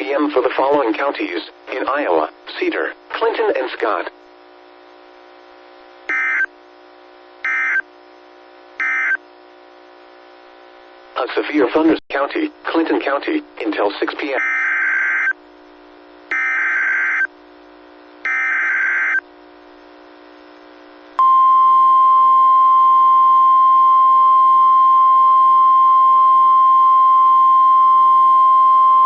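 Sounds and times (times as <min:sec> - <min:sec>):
steady warning alarm tone: 0:06.1 - 0:06.5, 0:07.4 - 0:07.8, 0:08.8 - 0:09.2, 0:14.4 - 0:15.4, 0:16.3 - 0:17.3, 0:18.2 - 0:19.2.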